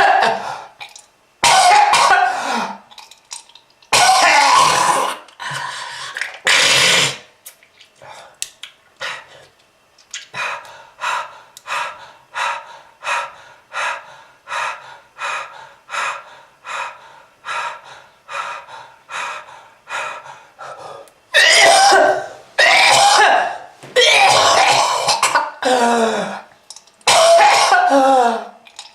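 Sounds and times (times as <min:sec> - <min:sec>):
harsh coughing: 0:00.0 - 0:00.5, 0:01.4 - 0:02.8, 0:03.9 - 0:05.3, 0:21.4 - 0:26.4, 0:27.1 - 0:28.1
person gasping with wheeze: 0:02.2 - 0:02.8, 0:25.6 - 0:26.5.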